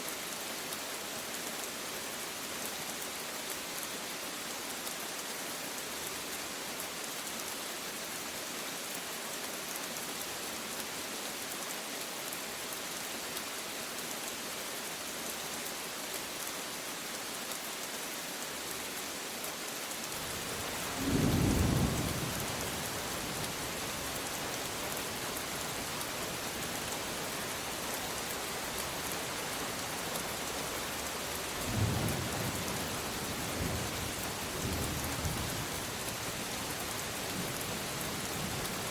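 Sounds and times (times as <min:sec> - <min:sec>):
heavy rain pattering: 0:08.8 - 0:38.9.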